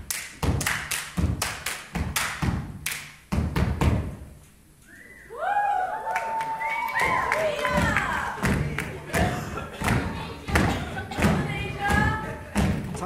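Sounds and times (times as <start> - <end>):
rhythmic stomping and clapping: 0.0 - 4.3, 6.2 - 13.0
voices: 6.4 - 12.7.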